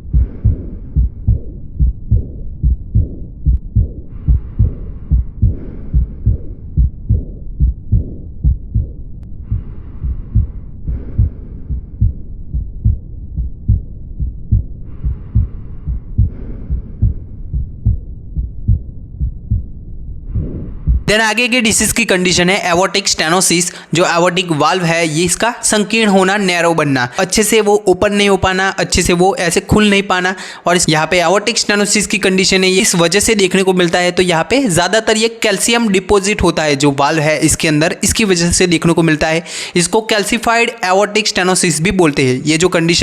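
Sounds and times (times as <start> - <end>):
heartbeat through stethoscope: 0.0 - 21.1.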